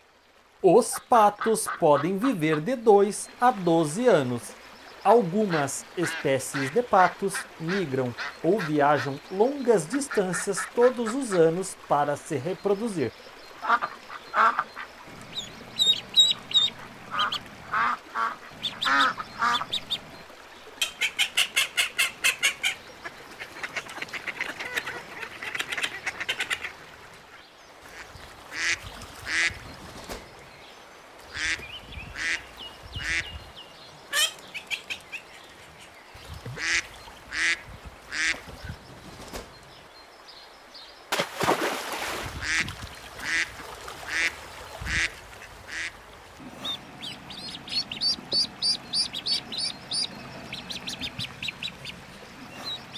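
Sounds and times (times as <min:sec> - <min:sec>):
ducks quacking: 0:00.8 - 0:04.3, 0:05.0 - 0:13.0, 0:13.6 - 0:20.2, 0:20.8 - 0:26.9, 0:27.9 - 0:29.6, 0:31.3 - 0:33.3, 0:36.5 - 0:38.5, 0:42.4 - 0:52.9.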